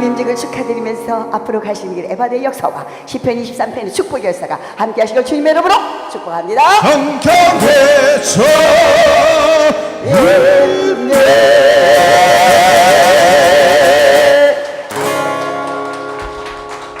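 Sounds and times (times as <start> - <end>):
person singing with vibrato: 0.0 - 1.4, 5.9 - 15.2
instrumental accompaniment: 12.0 - 17.0.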